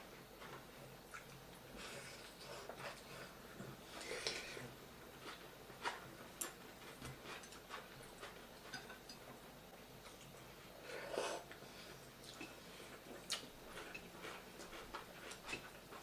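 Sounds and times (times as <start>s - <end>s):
chewing with wet mouth clicks: 0.4s - 4.4s, 11.5s - 16.0s.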